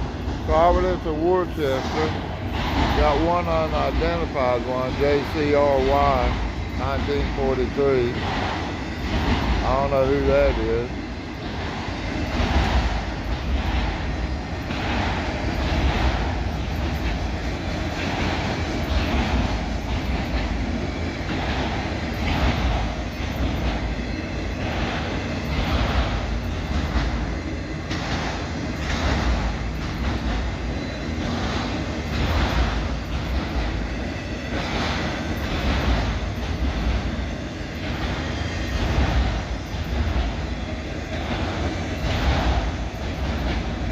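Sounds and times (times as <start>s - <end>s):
freight train rumbling past: 0.0s - 43.9s
wheels clicking over rail joints: 2.9s - 8.2s.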